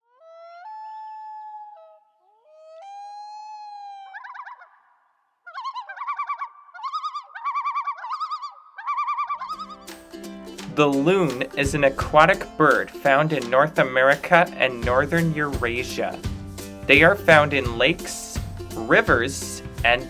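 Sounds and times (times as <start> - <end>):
loon wailing: 0.2 - 4.9, 5.5 - 9.8.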